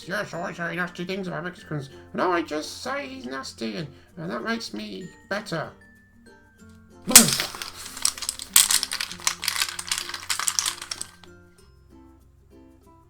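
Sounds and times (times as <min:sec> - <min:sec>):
quiet background music: 0:00.0 - 0:09.0
fidget toys clattering and clicking: 0:07.1 - 0:11.3.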